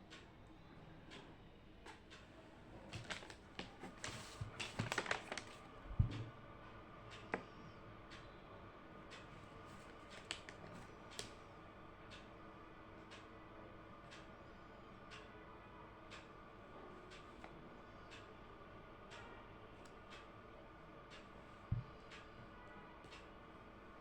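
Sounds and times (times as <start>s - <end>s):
faint room hum: 0.0s - 24.0s
paper rustling: 2.8s - 5.6s.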